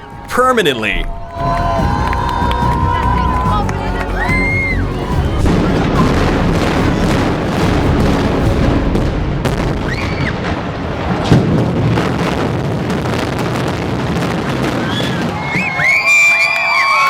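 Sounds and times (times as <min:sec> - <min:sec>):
spectators cheering and whistling: 0:00.0 - 0:08.9, 0:14.8 - 0:17.0
building collapsing rumble: 0:00.0 - 0:16.0.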